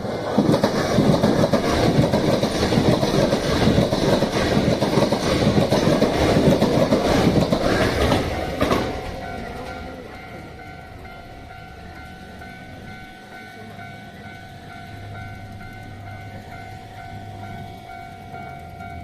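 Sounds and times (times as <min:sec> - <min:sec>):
train wheels clattering over rail joints: 0:00.0 - 0:13.0
electric train passing: 0:00.0 - 0:19.0.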